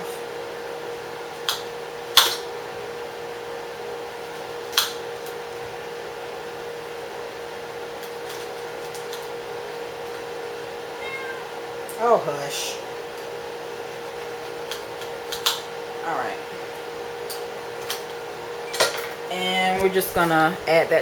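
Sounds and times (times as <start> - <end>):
steady hum: 15.7 - 21.0.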